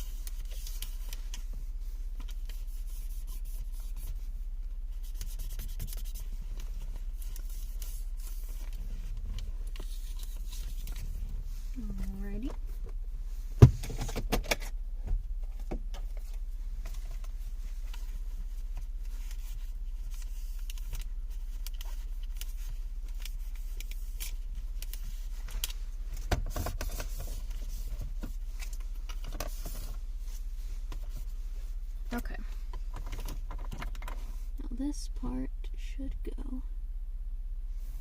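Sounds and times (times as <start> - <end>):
steady low hum: 0.0 - 38.0.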